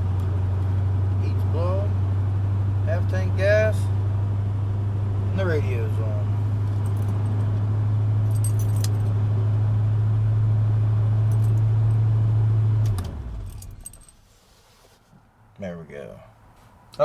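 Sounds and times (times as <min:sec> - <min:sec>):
pickup engine idling: 0:00.0 - 0:14.1
keys jingling on ring: 0:06.6 - 0:07.6, 0:08.3 - 0:09.2, 0:11.3 - 0:11.7, 0:13.4 - 0:14.2.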